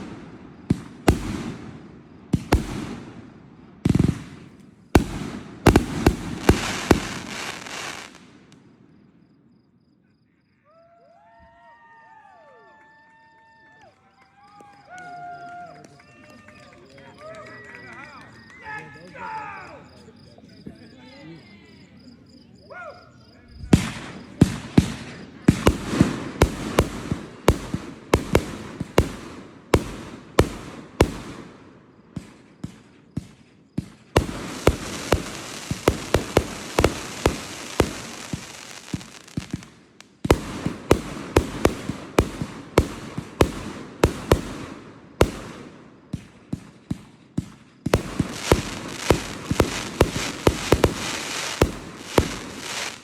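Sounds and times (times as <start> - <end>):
fireworks crackling hiss: 0.0 - 8.7, 23.7 - 53.0
fireworks bursting with bangs: 0.0 - 8.8, 23.6 - 53.0.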